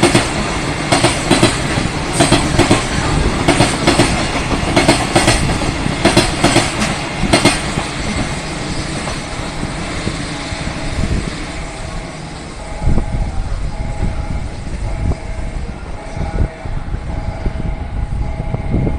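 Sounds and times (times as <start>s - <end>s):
train wheels clicking over rail joints: 0.0s - 13.0s
train rumble: 0.0s - 18.9s.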